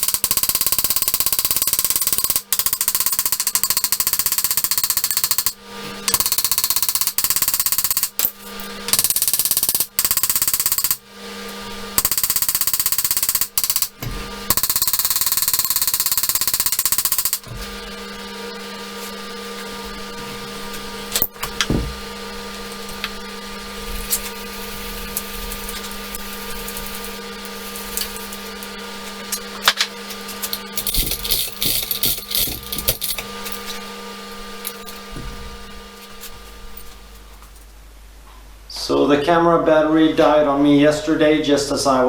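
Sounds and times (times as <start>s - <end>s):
steady hum: 0.0s - 42.0s
metal parts and tools clicking: 30.4s - 33.7s
power tool rattling: 30.5s - 33.6s.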